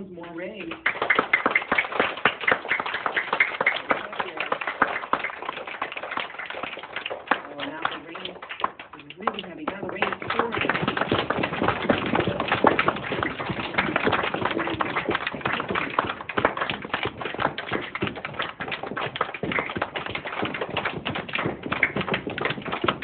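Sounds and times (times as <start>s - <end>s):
hands slapping and tapping: 7.6s - 23.0s.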